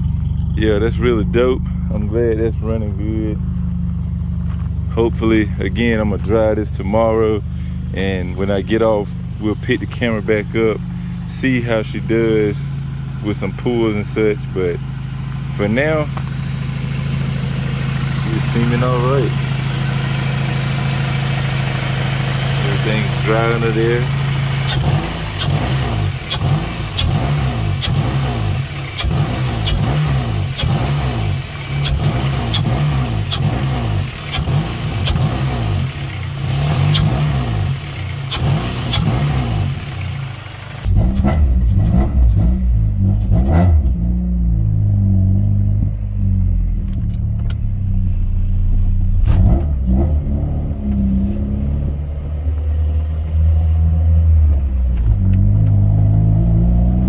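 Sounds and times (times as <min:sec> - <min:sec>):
car engine running: 0:00.0 - 0:57.0
sharp clicks: 0:15.4 - 0:42.0.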